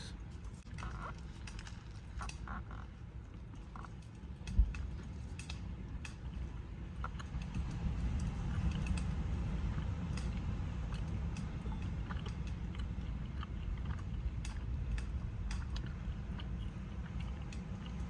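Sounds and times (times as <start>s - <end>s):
eating mouth sounds: 0.0s - 2.6s, 12.1s - 18.0s
steady low rumble: 0.0s - 18.0s.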